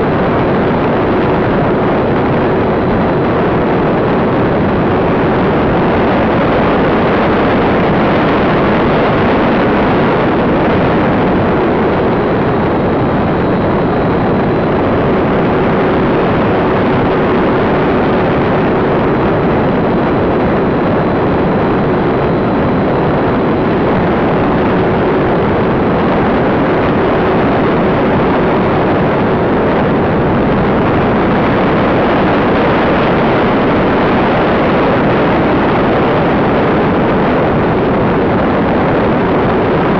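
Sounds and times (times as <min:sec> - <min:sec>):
air rushing over microphone: 0:00.0 - 0:39.9.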